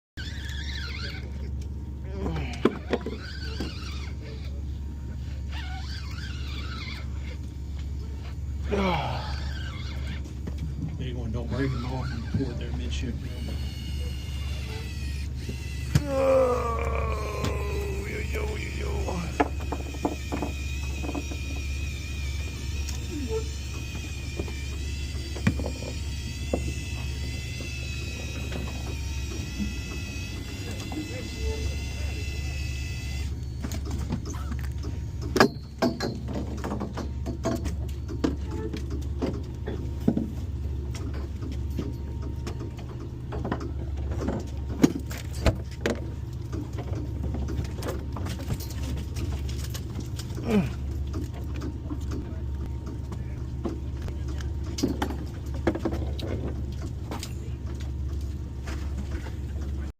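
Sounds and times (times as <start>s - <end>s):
short falling squeak: 0.2s - 1.4s, 5.4s - 7.4s
boat engine drone: 0.2s - 59.9s.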